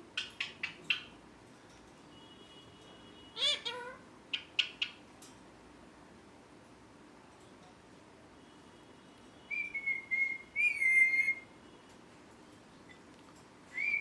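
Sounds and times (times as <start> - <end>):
parrot shrill chirps: 0.2 - 1.1, 3.3 - 5.0, 9.5 - 11.5, 13.7 - 14.0
parrot call rising and falling: 9.8 - 11.4.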